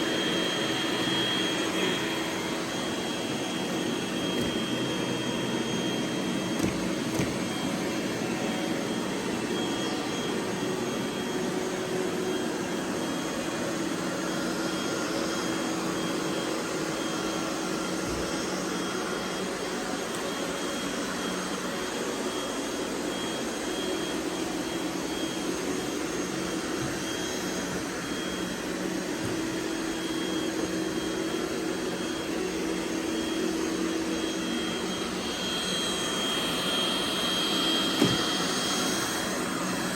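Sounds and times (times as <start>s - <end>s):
robot vacuum cleaners whirring: 0.0s - 39.9s
small knocks: 6.6s - 7.4s.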